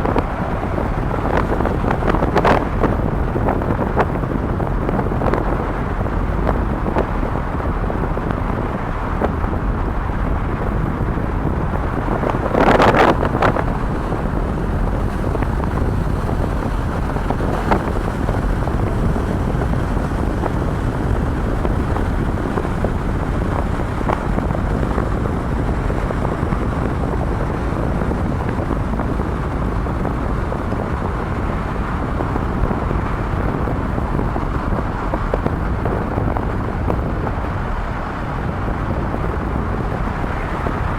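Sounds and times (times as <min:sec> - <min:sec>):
low rumble: 0:00.0 - 0:40.9
wind buffeting microphone: 0:00.0 - 0:40.9.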